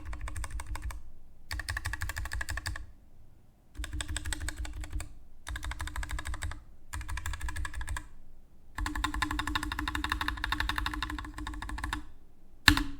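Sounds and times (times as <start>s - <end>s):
mechanical keyboard typing: 0.0s - 2.9s, 3.8s - 8.1s, 8.8s - 12.1s.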